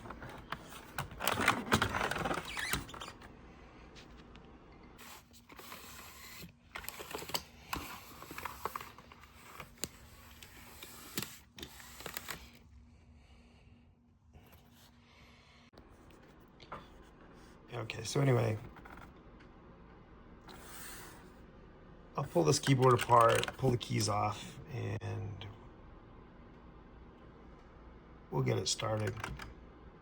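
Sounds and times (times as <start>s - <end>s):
plastic keyboard rustling: 0.0s - 3.3s, 5.0s - 12.6s, 22.3s - 24.2s.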